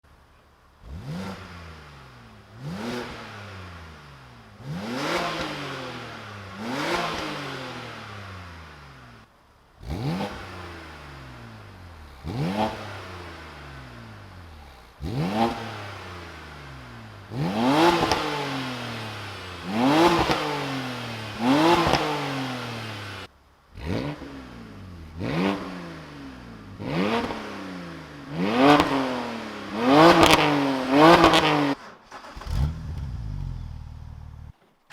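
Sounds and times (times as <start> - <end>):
car engine revving: 0.8 - 34.6.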